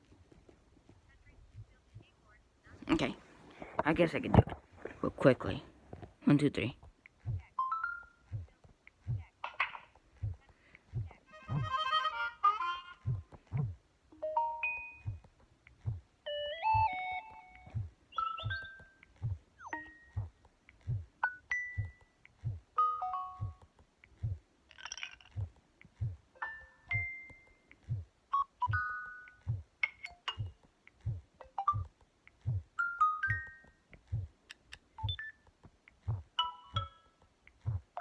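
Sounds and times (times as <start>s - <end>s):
steady low thud: 7.2s - 7.5s, 13.0s - 13.8s, 15.0s - 16.1s, 20.1s - 21.1s, 25.4s - 26.2s, 27.8s - 28.1s, 30.4s - 32.7s, 34.1s - 34.3s.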